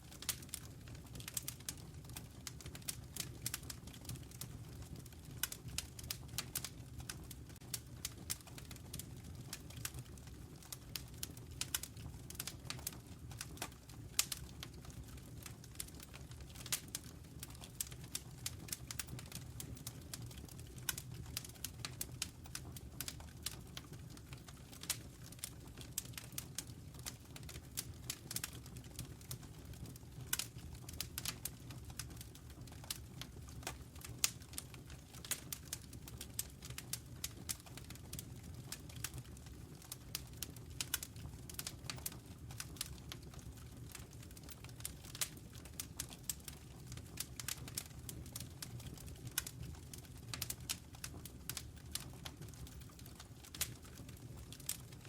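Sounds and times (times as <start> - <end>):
logs crackling and popping: 0.0 - 55.0.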